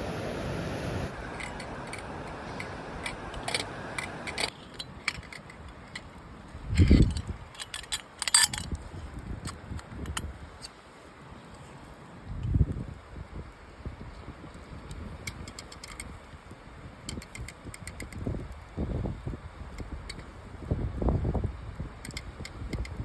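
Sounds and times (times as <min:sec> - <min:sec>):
hard objects clicking and clinking: 0:03.0 - 0:08.8.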